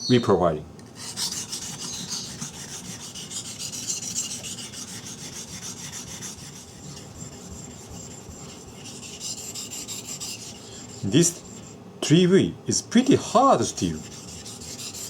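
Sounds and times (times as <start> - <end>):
knife rasping on water stone: 0.9 - 11.8, 13.8 - 15.0.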